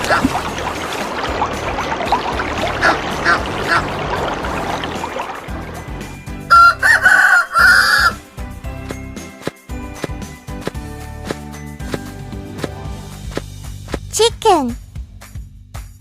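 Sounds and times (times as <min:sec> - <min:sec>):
rooster crowing: 0:06.5 - 0:08.2.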